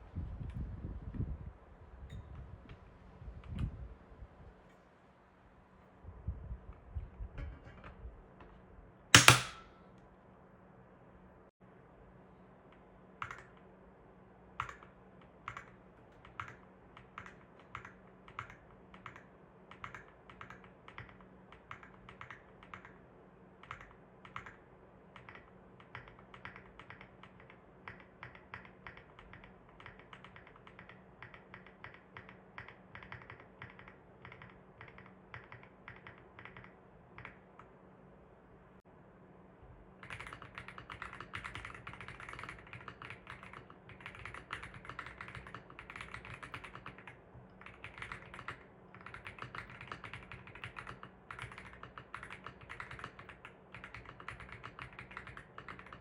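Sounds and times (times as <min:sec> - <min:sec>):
mechanical keyboard typing: 0:09.2 - 0:09.7, 0:13.2 - 0:13.7, 0:14.6 - 0:23.0, 0:23.6 - 0:37.7, 0:40.0 - 0:56.0.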